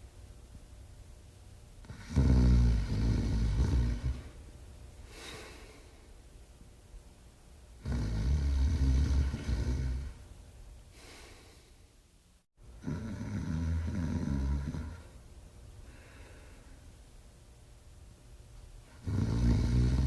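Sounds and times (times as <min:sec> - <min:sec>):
dog snoring: 0:01.8 - 0:04.4, 0:07.8 - 0:10.2, 0:12.8 - 0:15.2, 0:18.9 - 0:20.0
soft airy breath out: 0:05.0 - 0:06.2, 0:10.9 - 0:11.9, 0:15.8 - 0:16.9.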